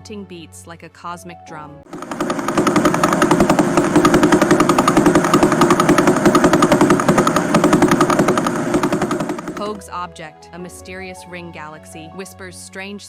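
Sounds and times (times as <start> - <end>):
fast even ticks: 1.9 - 9.8.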